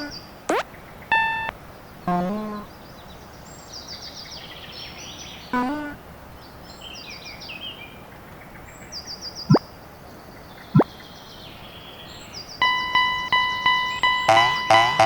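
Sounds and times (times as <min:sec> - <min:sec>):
cartoon sound effect: 0:00.0 - 0:01.5, 0:02.1 - 0:02.7, 0:05.6 - 0:06.0, 0:12.6 - 0:15.0
birds chirping in high trills: 0:00.0 - 0:15.0.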